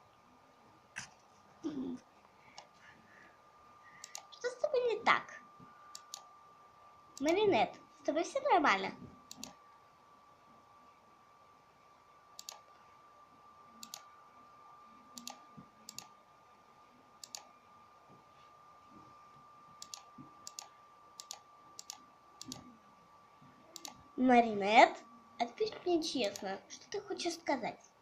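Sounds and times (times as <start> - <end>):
faint high hum: 0.0 - 28.0
faint sharp clicks: 12.4 - 12.7.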